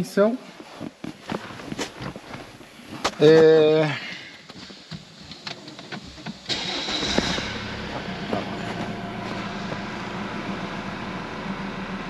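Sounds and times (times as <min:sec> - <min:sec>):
diesel engine idling clatter: 0:04.5 - 0:12.0.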